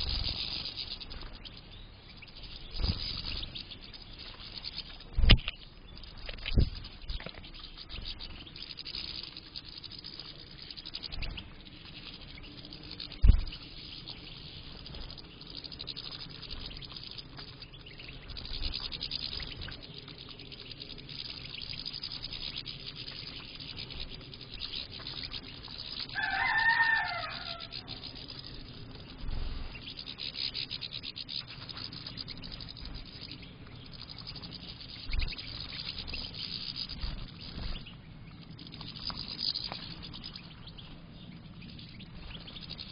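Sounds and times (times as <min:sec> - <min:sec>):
finches chattering and twittering: 0:00.0 - 0:42.9
low thumps: 0:13.1 - 0:13.8
rooster crowing: 0:26.1 - 0:28.1.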